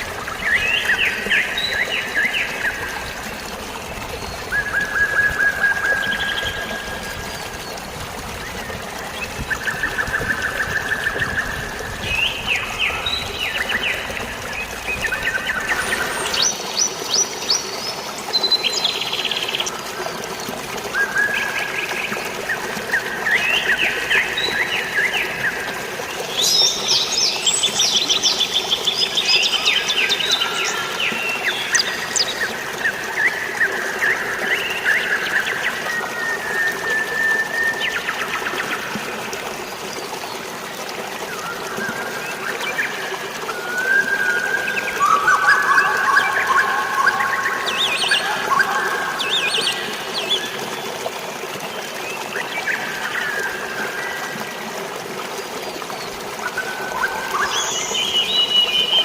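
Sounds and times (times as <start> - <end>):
flowing water rushing: 0.0 - 59.0
birds chirping and trilling: 43.7 - 50.9.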